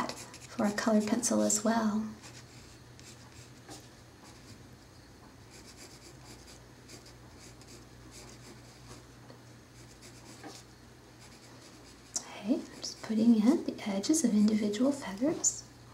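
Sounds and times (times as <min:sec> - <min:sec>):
pencil scratching on paper: 0:00.0 - 0:01.2, 0:02.2 - 0:04.6, 0:05.5 - 0:09.0, 0:09.8 - 0:10.6, 0:11.2 - 0:12.1
steady low hum: 0:00.0 - 0:15.9.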